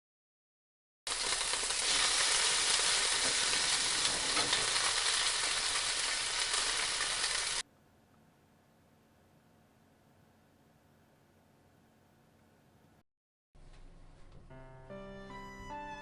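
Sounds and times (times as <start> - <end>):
chicken sizzling in a frying pan: 1.1 - 7.6.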